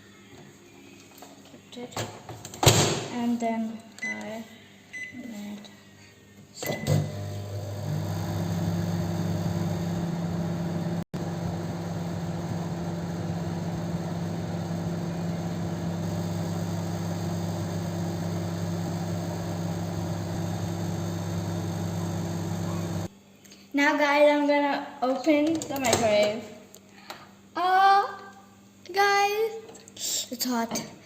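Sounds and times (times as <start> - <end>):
microwave oven humming: 6.7 - 23.1.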